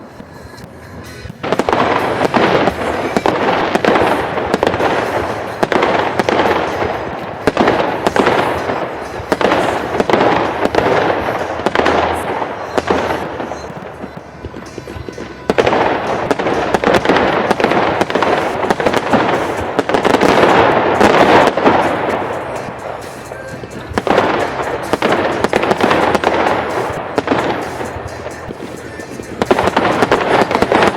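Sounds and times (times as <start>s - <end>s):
fireworks bangs: 0.0s - 30.9s
fireworks crackling: 0.0s - 30.9s.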